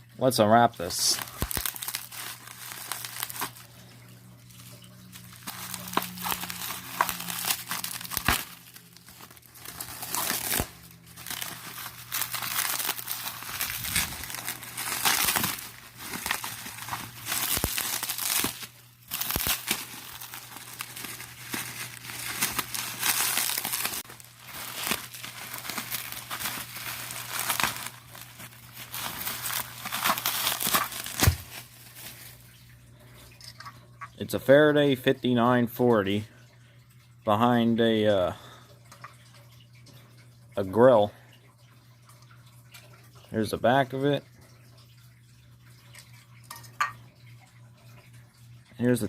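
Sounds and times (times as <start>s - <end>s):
packing wrap crinkling: 0.8s - 32.8s.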